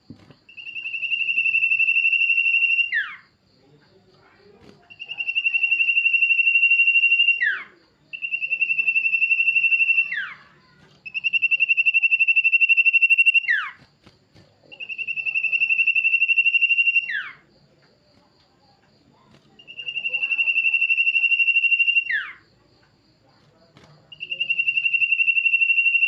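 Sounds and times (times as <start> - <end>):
bird whistled trills: 0.5 - 3.3, 4.9 - 13.8, 14.7 - 17.4, 19.6 - 22.4, 24.1 - 26.0.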